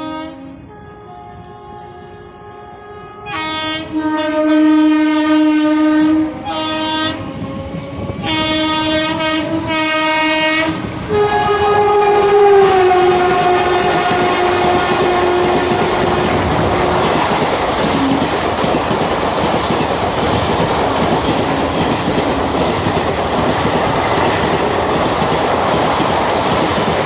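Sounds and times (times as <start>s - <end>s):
train rumble and clickety-clack: 0.0s - 2.7s, 3.3s - 27.0s
locomotive horn blasts: 0.0s - 17.2s.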